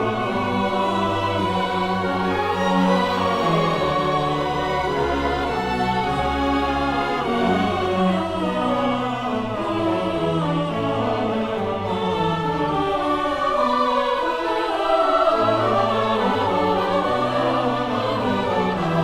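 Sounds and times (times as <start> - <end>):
symphony orchestra playing: 0.0 - 13.8
singing voices: 0.0 - 19.0.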